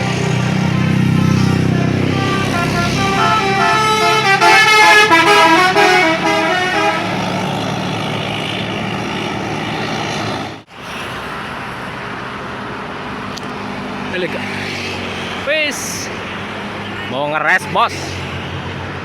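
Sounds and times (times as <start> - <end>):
musical bus horn playing tune: 0.0 - 7.4
bus engine running: 0.0 - 14.3.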